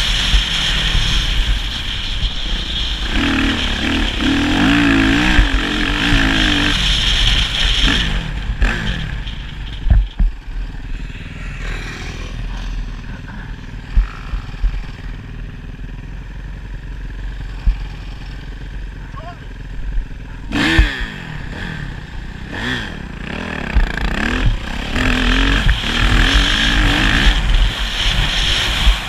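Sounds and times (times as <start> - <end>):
motorcycle engine revving: 0.0 - 29.0
sharp knocks and clatter: 0.3 - 10.5.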